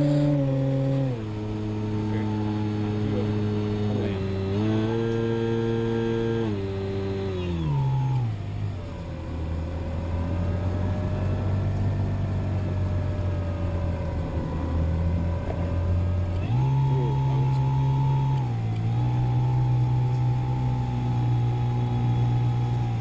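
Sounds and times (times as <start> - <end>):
model airplane motor humming: 0.0 - 8.5, 14.2 - 23.0.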